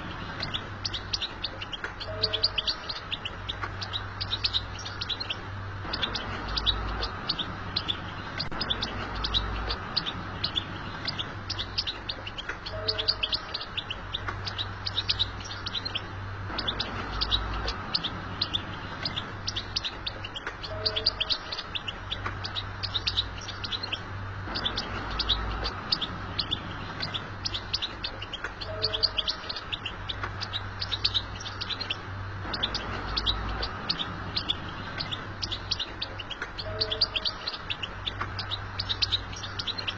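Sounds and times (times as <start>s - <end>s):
bird twittering: 0.0s - 39.9s
steady low hum: 0.0s - 39.9s.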